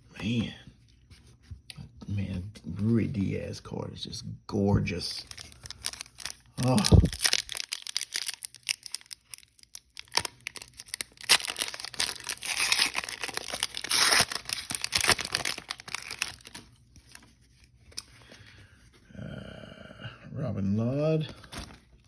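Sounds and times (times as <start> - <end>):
wrapper crinkling: 5.1 - 18.1
foil pack tearing: 5.2 - 16.7.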